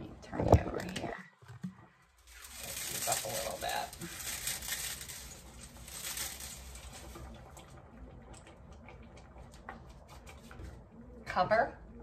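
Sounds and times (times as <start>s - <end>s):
broth bubbling: 5.4s - 11.0s.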